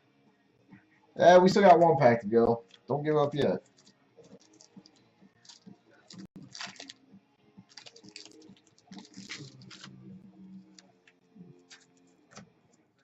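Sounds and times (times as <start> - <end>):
card wrapper crinkling: 3.6 - 7.0, 7.7 - 10.0, 11.6 - 12.0.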